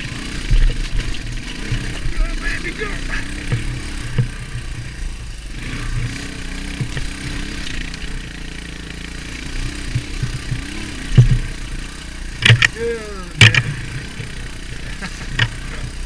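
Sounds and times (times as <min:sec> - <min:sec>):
motorcycle engine running: 0:00.0 - 0:16.0
sharp knocks: 0:09.8 - 0:11.6, 0:12.4 - 0:12.8, 0:13.4 - 0:14.3.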